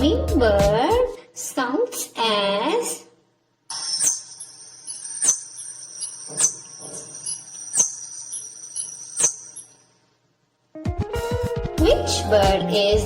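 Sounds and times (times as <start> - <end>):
hummingbird chip notes: 3.7 - 9.9
thin high-pitched tone: 3.7 - 10.0.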